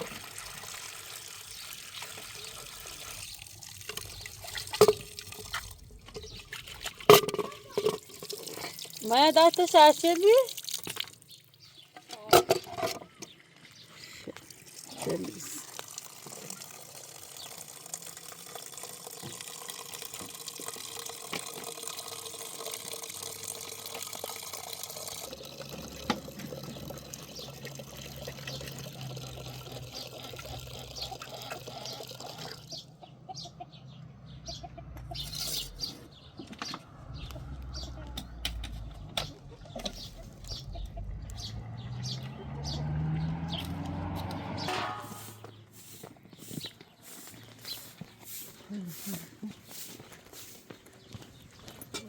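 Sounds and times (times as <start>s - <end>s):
running water splashing: 0.0s - 11.7s, 14.4s - 32.8s.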